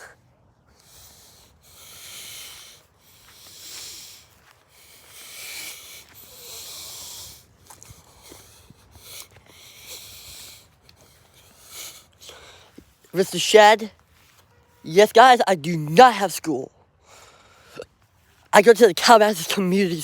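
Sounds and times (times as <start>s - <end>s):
person breathing hard: 0.0s - 13.1s, 17.0s - 18.0s.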